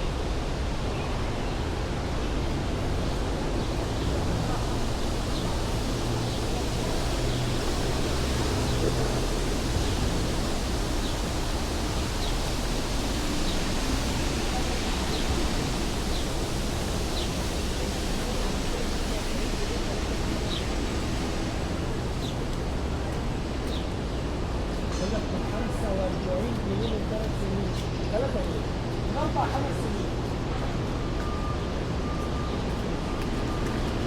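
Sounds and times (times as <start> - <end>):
even rushing noise: 0.2 - 27.0
faint voices murmuring: 2.4 - 34.0.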